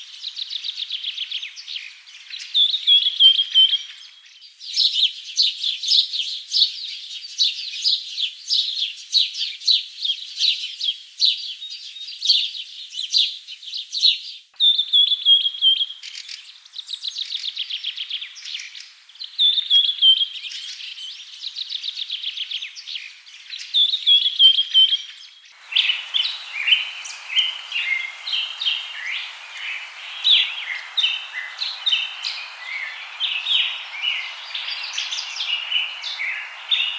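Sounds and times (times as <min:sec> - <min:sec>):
songbirds chirping: 0:00.0 - 0:36.9
bird trills: 0:25.6 - 0:36.9
steady hiss: 0:25.6 - 0:36.9.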